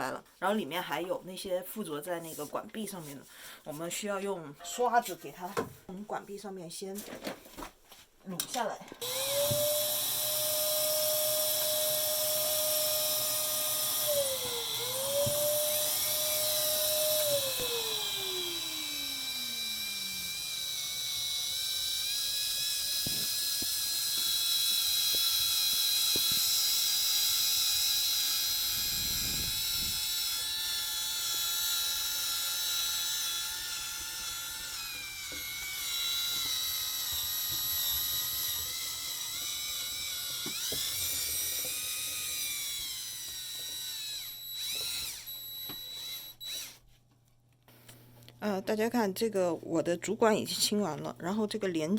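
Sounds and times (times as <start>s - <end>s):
power drill motor whine: 9.0s - 46.8s.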